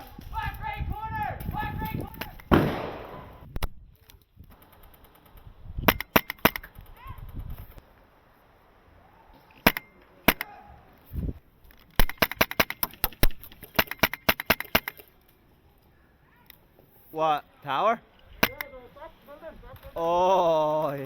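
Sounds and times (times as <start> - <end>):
airsoft guns firing: 2.2 - 3.4, 9.6 - 10.5, 12.0 - 15.0.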